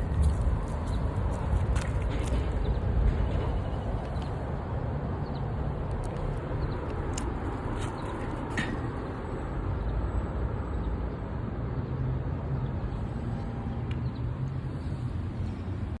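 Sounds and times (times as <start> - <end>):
low outdoor rumble: 0.0 - 10.0.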